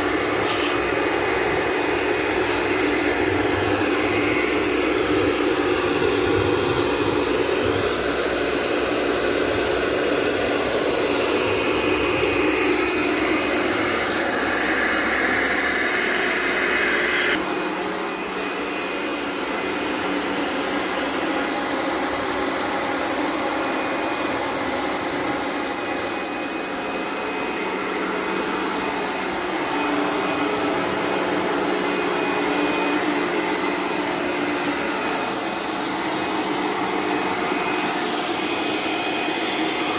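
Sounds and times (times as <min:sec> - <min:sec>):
machine motor whirring: 0:00.0 - 0:20.2.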